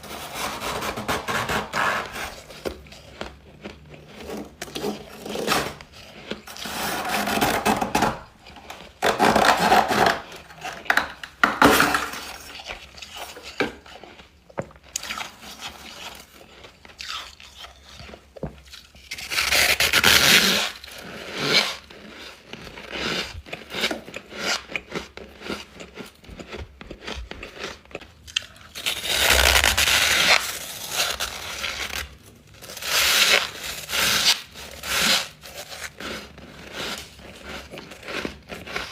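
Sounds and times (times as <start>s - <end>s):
ice being chewed: 2.1s - 7.3s, 10.2s - 38.9s.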